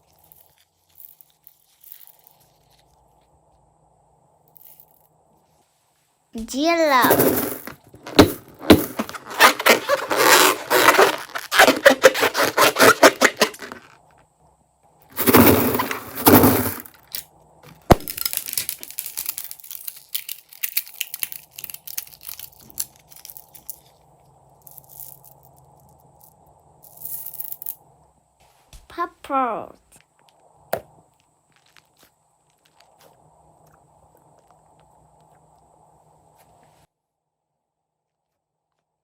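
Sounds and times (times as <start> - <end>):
crunchy slime crackling: 17.8 - 23.9, 31.1 - 35.4.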